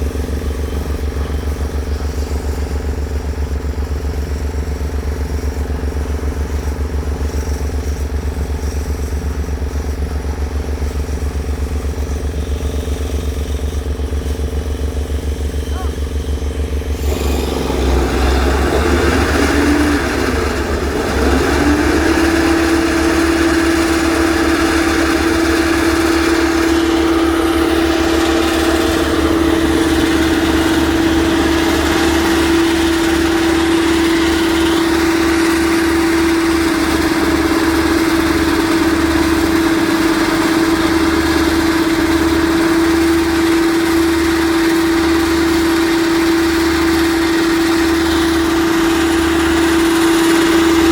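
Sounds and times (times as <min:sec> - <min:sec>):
machine engine humming: 0:00.0 - 0:50.9.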